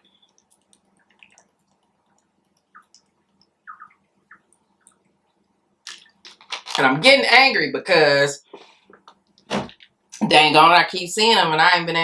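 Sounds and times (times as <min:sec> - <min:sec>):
wet mouth clicks from eating: 0:00.2 - 0:05.0.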